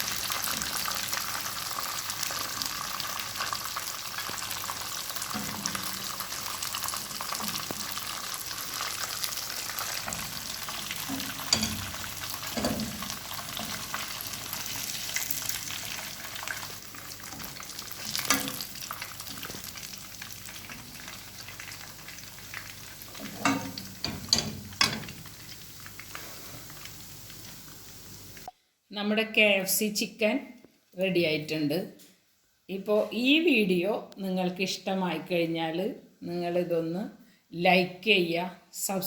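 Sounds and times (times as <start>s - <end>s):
chicken sizzling in oil: 0.0s - 28.5s.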